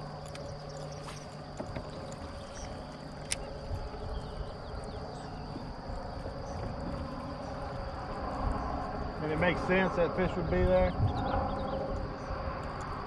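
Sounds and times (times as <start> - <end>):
water washing against kayak hull: 0.0 - 9.7.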